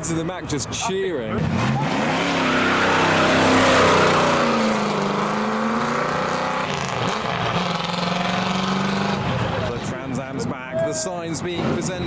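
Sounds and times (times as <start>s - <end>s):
another engine: 1.3s - 10.4s
car engine revving: 1.3s - 10.4s.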